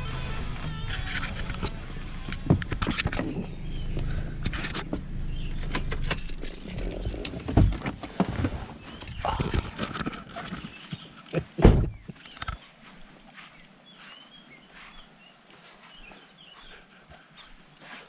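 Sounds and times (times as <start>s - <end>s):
low vehicle engine rumble: 0.0s - 12.1s
keys jangling: 5.5s - 7.4s, 9.0s - 11.4s.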